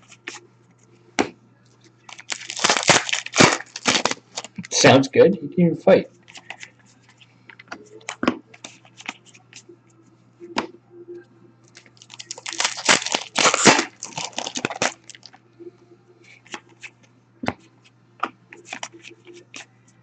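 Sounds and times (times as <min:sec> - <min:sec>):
card pack wrappers tearing and crinkling: 0:02.0 - 0:04.8, 0:11.8 - 0:15.4
cards clicking and rustling: 0:02.0 - 0:04.8, 0:07.5 - 0:09.2, 0:11.7 - 0:15.4, 0:18.6 - 0:19.7.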